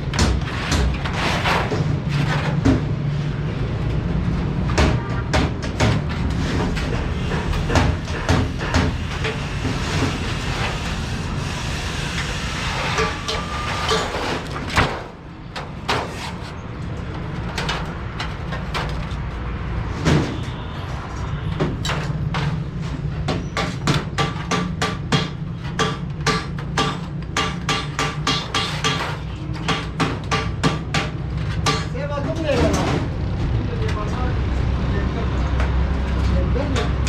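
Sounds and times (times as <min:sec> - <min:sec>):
hammer striking sheet metal: 0:04.8 - 0:15.1, 0:23.6 - 0:32.0.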